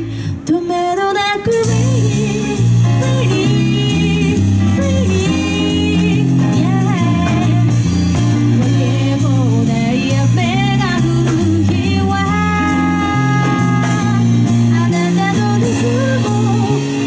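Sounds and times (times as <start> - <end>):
bass: 0.0 - 17.0
drums: 0.0 - 17.0
electric guitar: 0.0 - 17.0
person singing: 8.6 - 17.0.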